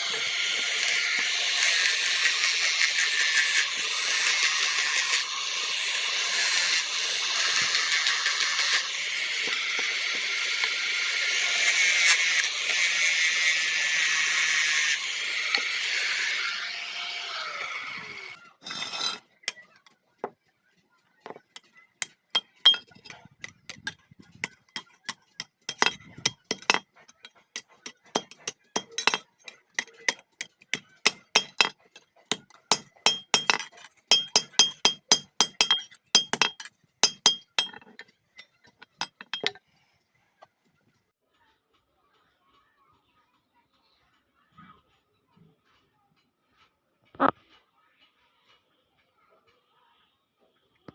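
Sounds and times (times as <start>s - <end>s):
power tool running: 0.0s - 18.4s.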